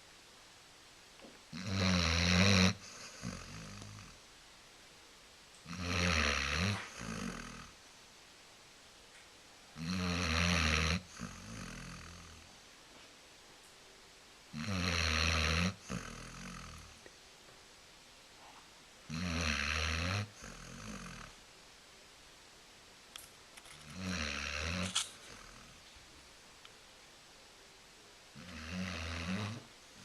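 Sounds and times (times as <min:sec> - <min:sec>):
dog snoring: 0:01.5 - 0:04.2, 0:05.6 - 0:07.8, 0:09.8 - 0:12.5, 0:14.5 - 0:17.0, 0:19.1 - 0:21.4, 0:23.8 - 0:25.8, 0:28.4 - 0:30.0.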